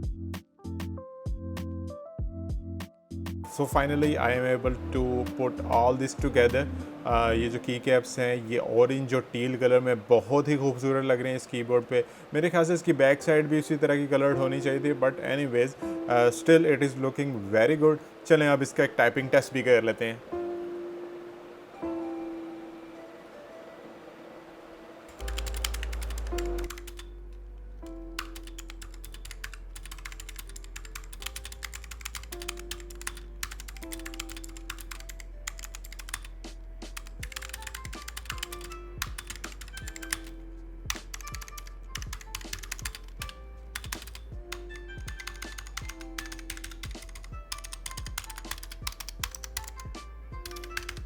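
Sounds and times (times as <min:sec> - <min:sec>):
background music: 0:00.0 - 0:51.0
clicky keyboard typing: 0:25.1 - 0:27.2, 0:28.2 - 0:36.3, 0:37.0 - 0:51.0.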